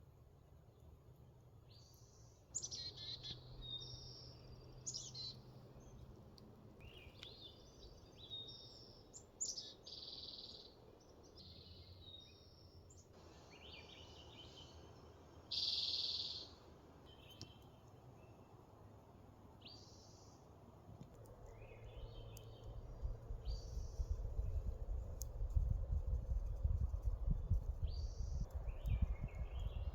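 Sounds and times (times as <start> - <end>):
songbirds chirping: 0.5 - 29.9.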